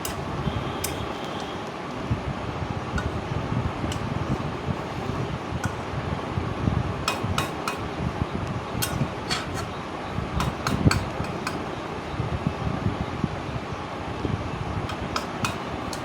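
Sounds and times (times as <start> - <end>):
rushing background noise: 0.0 - 16.0
metal spatula scraping a pan: 8.8 - 9.8.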